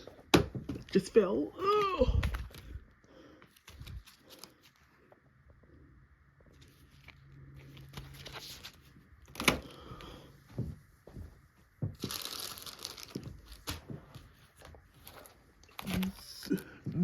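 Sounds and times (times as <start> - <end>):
paper bag crinkling and rustling: 2.2 - 2.8, 3.5 - 4.9, 6.6 - 9.7, 12.0 - 16.9.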